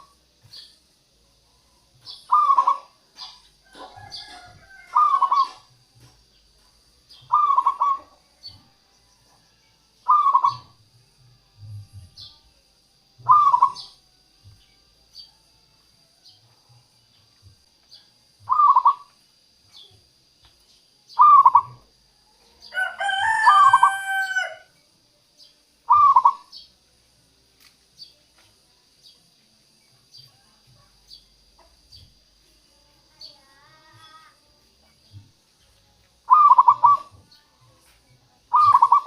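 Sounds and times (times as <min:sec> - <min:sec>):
dove cooing: 0:02.3 - 0:05.7, 0:07.2 - 0:08.6, 0:10.1 - 0:10.8, 0:13.2 - 0:14.0, 0:18.4 - 0:19.1, 0:21.2 - 0:21.9, 0:25.9 - 0:26.5, 0:36.3 - 0:37.2, 0:38.5 - 0:39.0
rooster crowing: 0:03.6 - 0:05.6, 0:22.5 - 0:24.7.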